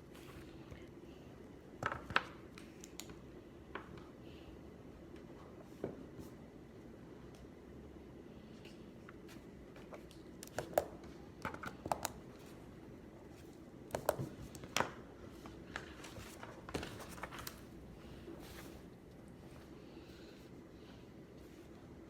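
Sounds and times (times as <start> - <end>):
low room hum: 0.0 - 22.0
clicks taps and rustles on desk: 13.9 - 15.0.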